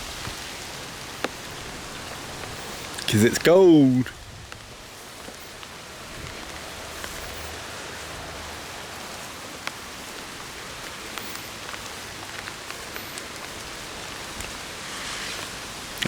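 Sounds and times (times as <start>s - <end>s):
raindrops ticking close by: 0.0s - 16.0s
steady rain hiss: 0.0s - 16.0s.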